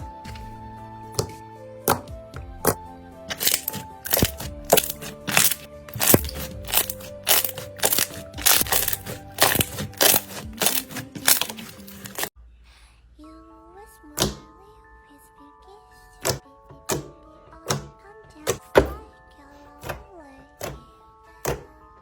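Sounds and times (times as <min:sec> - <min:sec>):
background music: 0:00.0 - 0:12.3, 0:13.3 - 0:22.0
slime crackling pops: 0:03.3 - 0:12.3.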